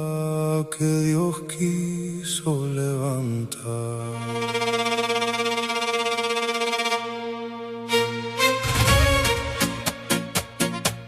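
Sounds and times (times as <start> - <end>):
instrumental music: 4.0 - 11.0
percussion strikes: 8.5 - 11.0.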